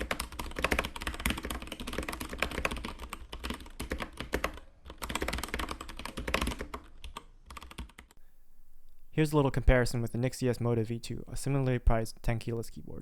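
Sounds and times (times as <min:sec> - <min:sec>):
mechanical keyboard typing: 0:00.0 - 0:08.2.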